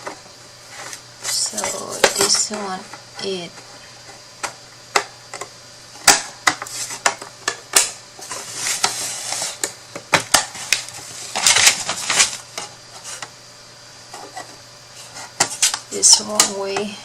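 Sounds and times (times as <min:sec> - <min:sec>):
wood scraping and sliding: 0:08.2 - 0:09.6.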